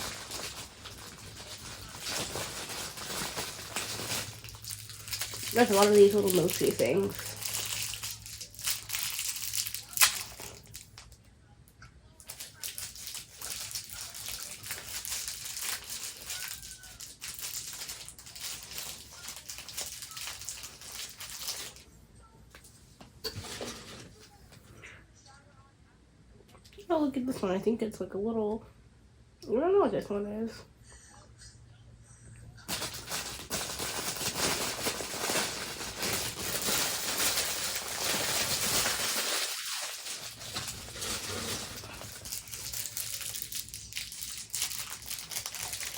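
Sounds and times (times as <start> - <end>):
plastic packaging crinkling: 0.0 - 11.2, 12.2 - 21.8, 32.7 - 45.9.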